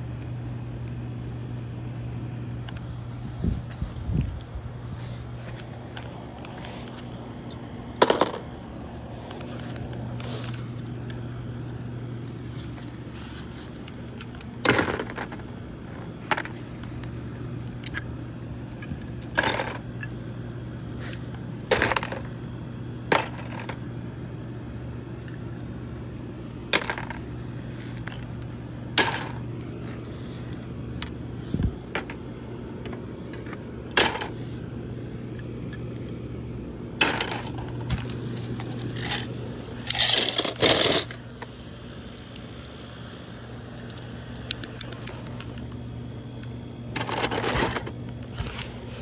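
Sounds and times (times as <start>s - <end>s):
steady low hum: 0.0s - 49.0s
plastic bricks clattering: 5.4s - 8.5s, 12.5s - 17.2s, 18.8s - 20.3s, 21.0s - 22.4s, 23.1s - 23.9s, 26.7s - 31.2s, 32.9s - 34.8s, 37.0s - 41.5s, 46.9s - 48.8s.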